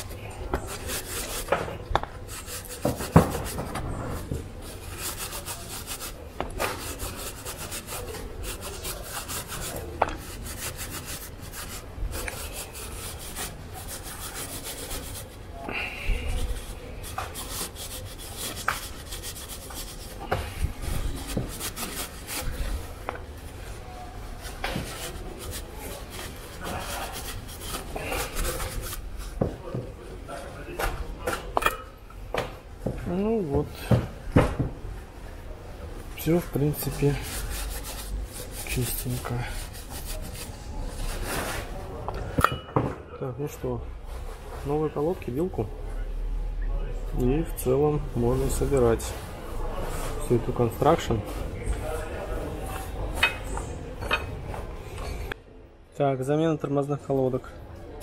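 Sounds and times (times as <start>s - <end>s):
paper napkin scrubbing metal: 0.0s - 1.6s, 2.2s - 15.4s, 16.3s - 22.9s, 24.4s - 29.4s, 36.5s - 41.5s.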